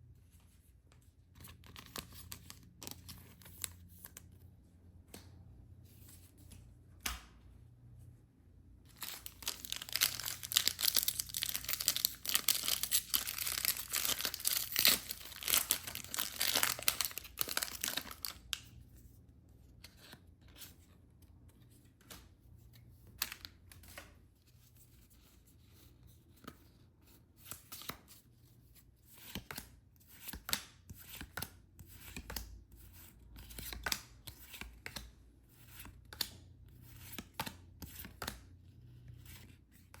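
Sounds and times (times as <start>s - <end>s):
plastic packaging tearing and crinkling: 8.9s - 18.5s.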